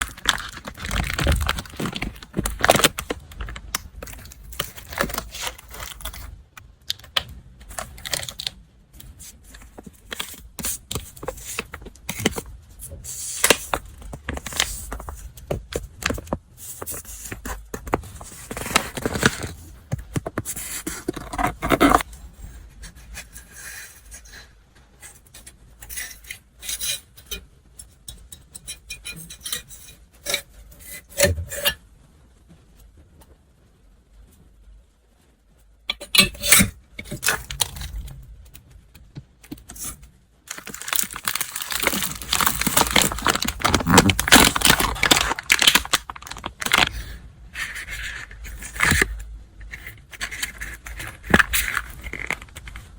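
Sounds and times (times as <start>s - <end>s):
paper packaging rustling and tearing: 0.0s - 22.1s, 37.0s - 38.2s, 40.5s - 52.9s.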